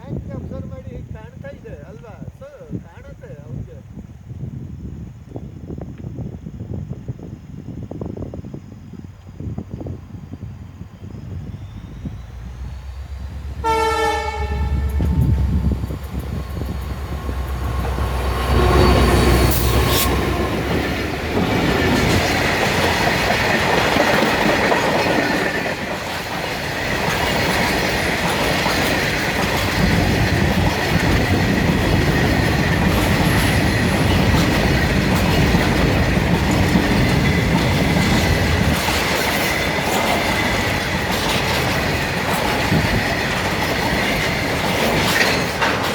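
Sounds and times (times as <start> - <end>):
locomotive rumble: 9.5 - 45.9
train horn blast: 13.4 - 20.6
wagon wheels squealing: 31.8 - 45.9.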